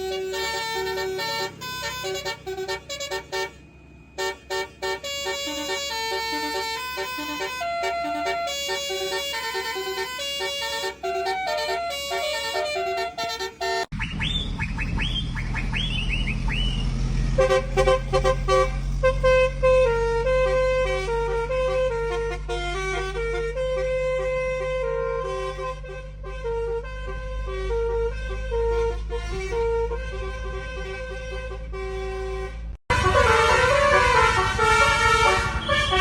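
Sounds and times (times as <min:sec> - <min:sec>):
musical truck horn melody: 0:00.0 - 0:36.0
truck engine running low: 0:00.0 - 0:36.0
falling whistle chirps: 0:13.9 - 0:16.9.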